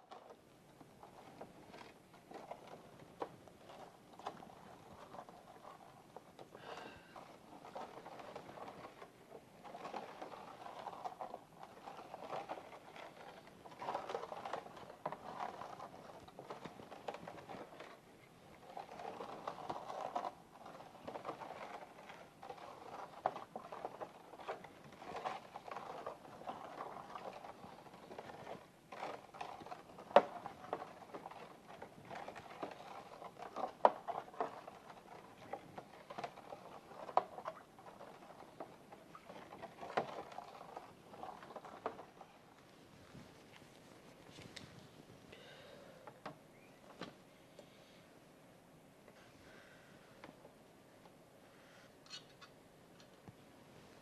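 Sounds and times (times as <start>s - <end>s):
rustling: 0.0s - 48.1s, 49.1s - 54.0s.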